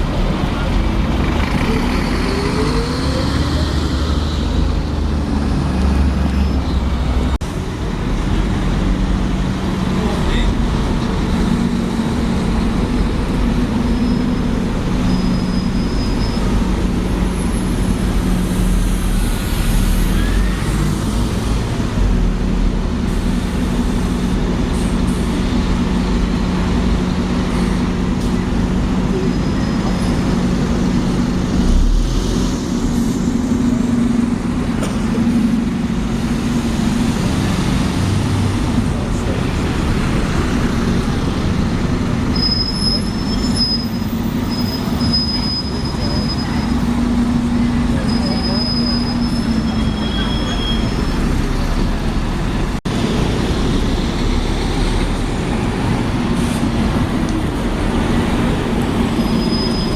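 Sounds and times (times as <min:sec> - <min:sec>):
city street traffic: 0:00.0 - 0:59.9
heavy vehicle engine running: 0:00.0 - 0:59.9.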